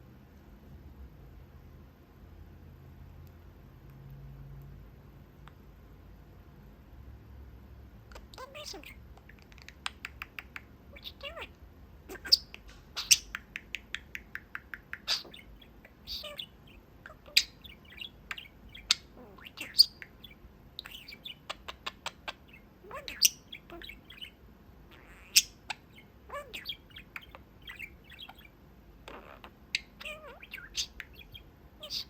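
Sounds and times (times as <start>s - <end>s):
budgie chirping and warbling: 8.1s - 32.0s.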